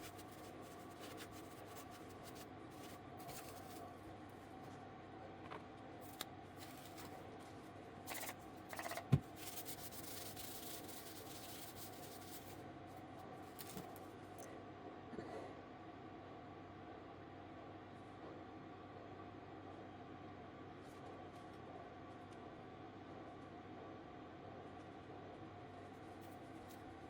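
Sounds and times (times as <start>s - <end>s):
rubbing and scraping handling noise: 0.0s - 4.0s, 6.0s - 12.6s
steady hum: 0.0s - 27.0s.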